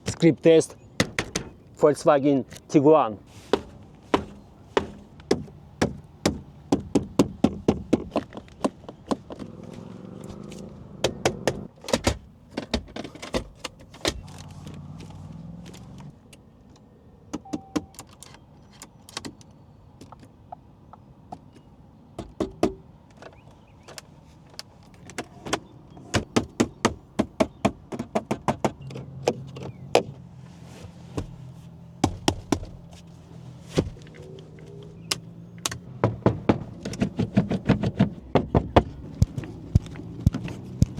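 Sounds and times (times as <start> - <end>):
knocks on car interior panels: 1.0 - 1.6, 3.5 - 9.4, 11.0 - 13.5, 22.2 - 22.8, 26.1 - 30.2, 31.2 - 32.9, 36.0 - 40.9.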